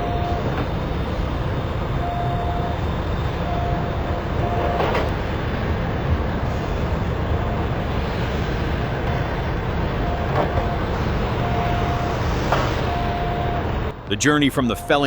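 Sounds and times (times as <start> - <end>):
heavy vehicle rumbling: 0.0 - 15.0.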